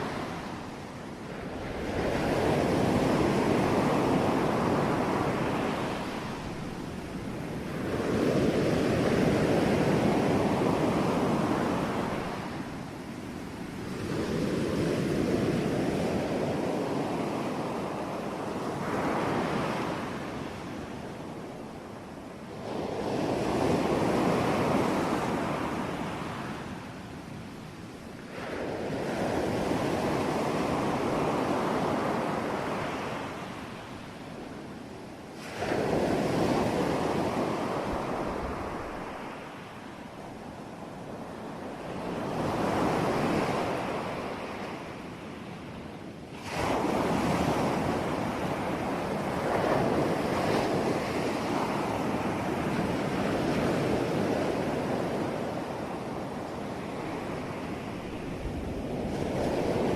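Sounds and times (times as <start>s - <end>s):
sea waves breaking on shore: 46.3s - 59.9s.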